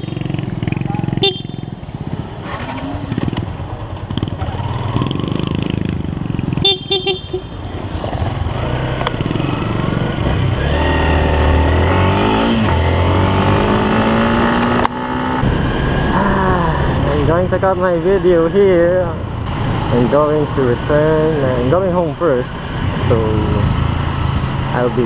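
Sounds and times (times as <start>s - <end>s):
motorcycle horn beeps: 0.0s - 0.3s, 1.0s - 1.8s, 6.6s - 7.7s
motorcycle engine revving: 0.0s - 25.0s.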